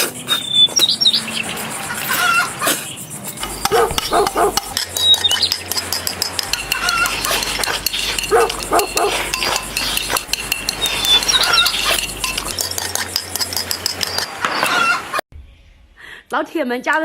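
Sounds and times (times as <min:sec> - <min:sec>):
dishes and utensils clattering: 0:01.6 - 0:15.2
dog barking: 0:03.6 - 0:04.7, 0:08.2 - 0:09.3.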